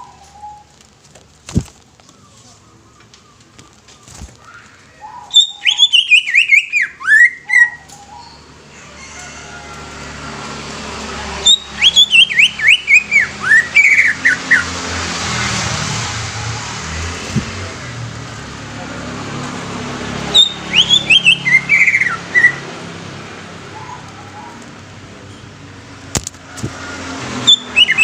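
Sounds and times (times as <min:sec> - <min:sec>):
bird singing whistled notes: 0:04.4 - 0:08.4, 0:11.4 - 0:14.6, 0:20.4 - 0:22.6, 0:27.5 - 0:28.0.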